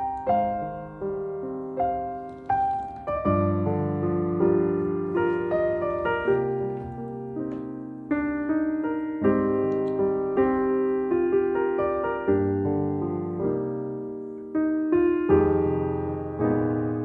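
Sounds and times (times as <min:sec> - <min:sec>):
gentle piano music: 0:00.0 - 0:17.0.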